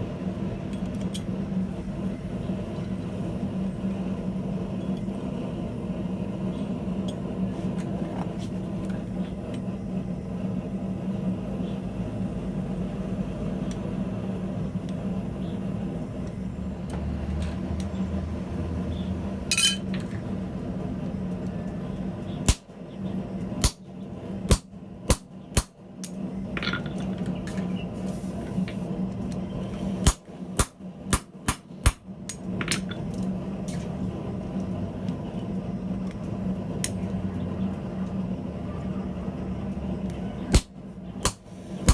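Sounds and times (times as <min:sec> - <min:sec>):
steady low hum: 0:00.0 - 0:41.9
hammer striking steel on anvil: 0:19.5 - 0:19.9, 0:22.5 - 0:22.7, 0:30.0 - 0:32.0, 0:40.5 - 0:41.9.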